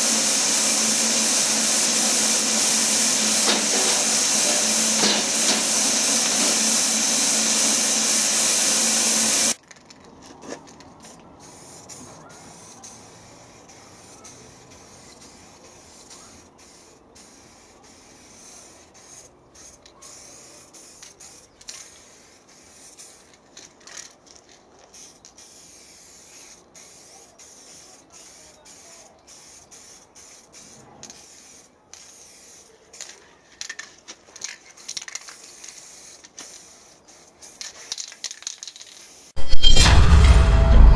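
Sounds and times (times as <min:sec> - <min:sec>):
loud steady hiss: 0:00.0 - 0:09.6
workshop noise: 0:00.0 - 0:12.9, 0:39.4 - 0:40.9.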